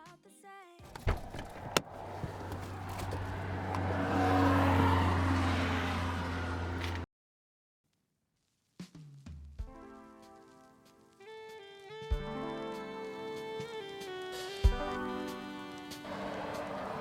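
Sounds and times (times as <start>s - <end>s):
car engine hum: 0.8s - 7.0s, 16.1s - 17.0s.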